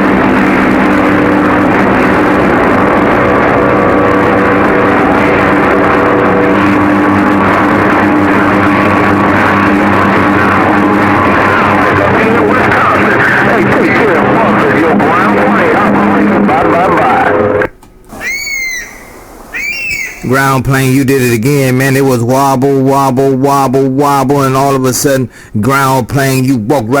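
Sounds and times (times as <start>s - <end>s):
radio hiss: 4.2s - 18.3s, 19.0s - 22.1s.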